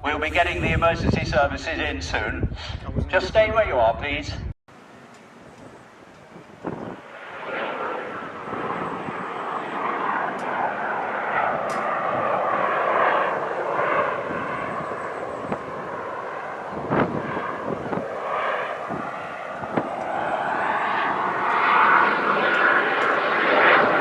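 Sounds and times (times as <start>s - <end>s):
jet engine rush with whine: 0.0s - 4.1s, 4.7s - 24.0s.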